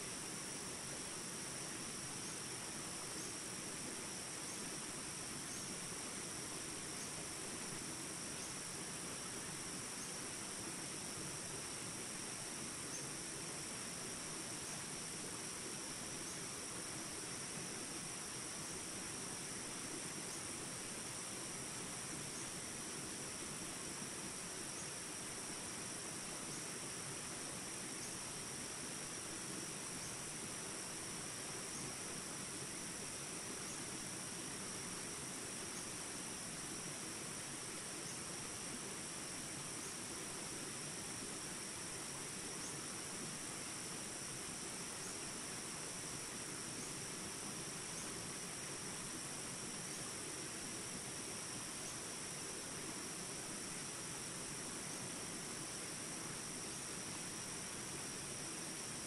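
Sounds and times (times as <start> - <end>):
insect drone: 0.0 - 59.0
faint bird chirps: 5.4 - 5.8, 12.8 - 13.2, 27.9 - 28.4, 33.6 - 34.0, 44.8 - 45.4, 47.8 - 48.2, 51.8 - 52.2.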